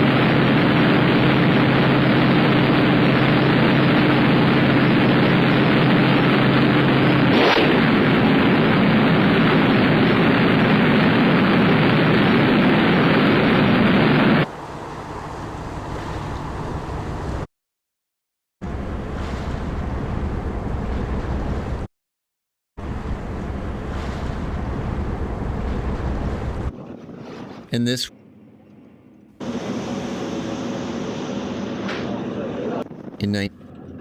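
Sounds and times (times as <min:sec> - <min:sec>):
heavy rushing noise: 0:00.0 - 0:17.5, 0:29.4 - 0:33.3.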